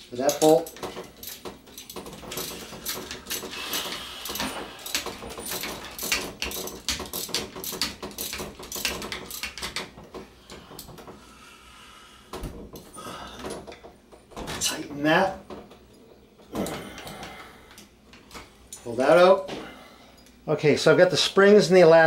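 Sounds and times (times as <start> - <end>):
socket wrench ratcheting: 0.3 - 9.8.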